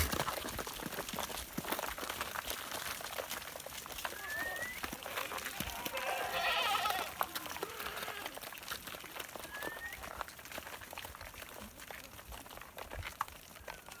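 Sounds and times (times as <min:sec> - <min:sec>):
goat or sheep bleating: 0:04.2 - 0:08.5.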